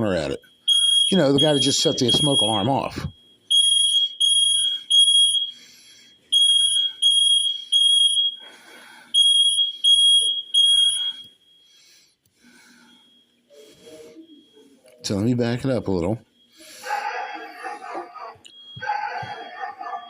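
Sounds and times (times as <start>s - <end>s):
smoke alarm beeping: 0.0s - 16.8s, 18.4s - 20.0s.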